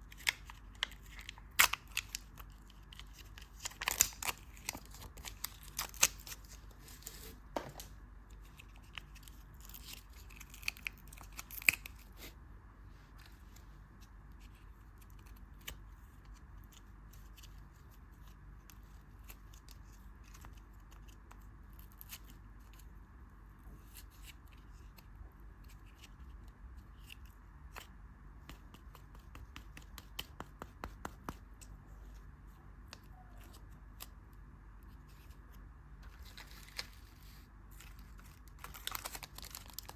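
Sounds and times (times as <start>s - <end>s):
candy wrapper crinkling: 0.1s - 7.2s, 8.4s - 12.2s, 36.0s - 39.9s.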